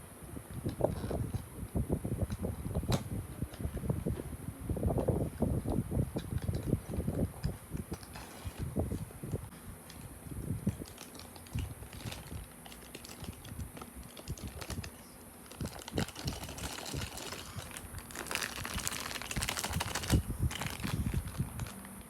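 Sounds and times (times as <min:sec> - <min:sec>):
packaging rustling and crinkling: 0:06.4 - 0:22.0.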